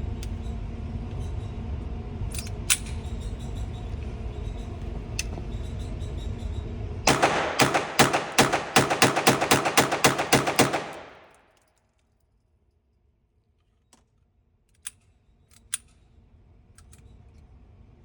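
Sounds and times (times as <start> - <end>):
rapid gunshots: 7.1 - 11.3.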